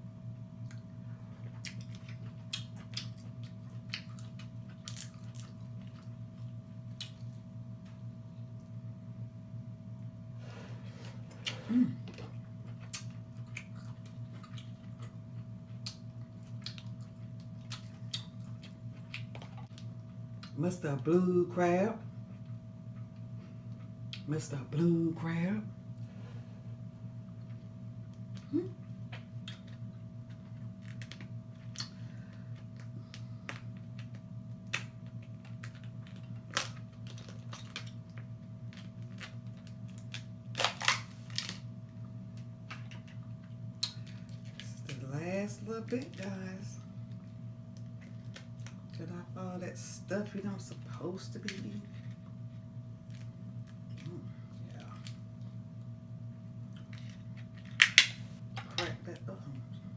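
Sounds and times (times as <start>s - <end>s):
low background hum: 0.0s - 59.9s
wet chewing and lip smacking: 0.6s - 8.0s, 12.3s - 20.6s, 42.7s - 44.7s
mouth sounds: 28.4s - 28.8s
crab shell cracking: 32.6s - 41.7s, 56.8s - 58.3s.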